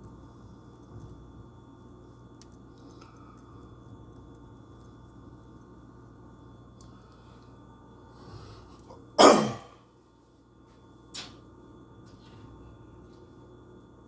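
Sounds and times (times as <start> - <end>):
person coughing: 9.2 - 9.8.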